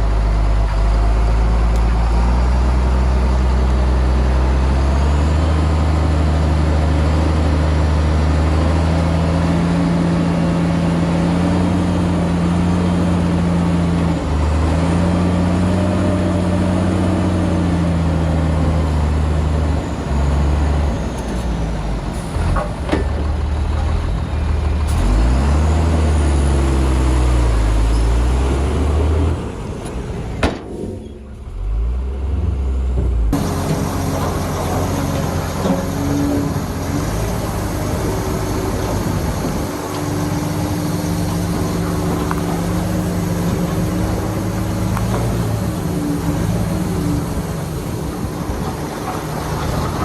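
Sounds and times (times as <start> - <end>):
heavy diesel engine revving: 0.0 - 22.8, 23.4 - 30.4, 31.0 - 50.0.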